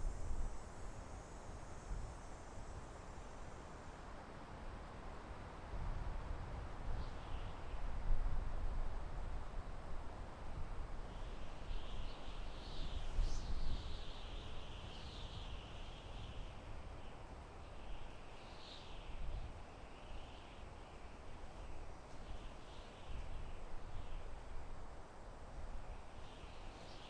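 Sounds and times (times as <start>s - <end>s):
wind blowing through forest: 0.0s - 27.0s
small birds chirping: 11.1s - 24.4s.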